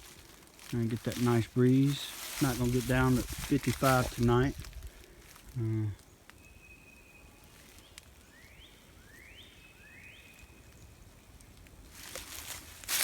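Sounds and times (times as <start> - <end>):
rustling noise: 0.0 - 5.6, 11.5 - 13.0.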